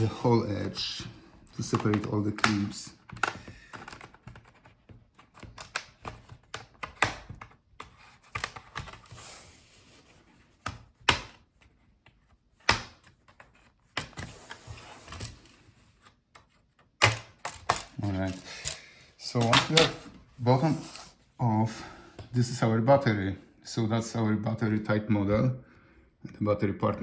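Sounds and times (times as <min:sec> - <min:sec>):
plastic clips snapping loose: 0:01.5 - 0:04.3, 0:17.0 - 0:18.8.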